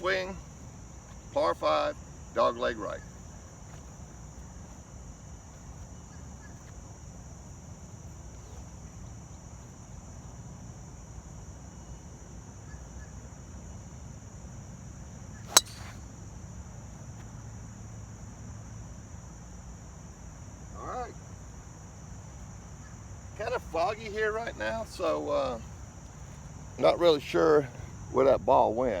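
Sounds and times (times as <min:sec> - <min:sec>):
insects droning: 0:00.0 - 0:29.0
golf club striking ball: 0:15.5 - 0:16.1.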